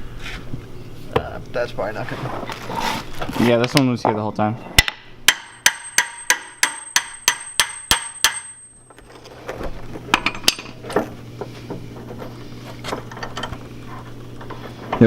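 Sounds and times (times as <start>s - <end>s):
hammer striking metal: 4.8s - 8.7s.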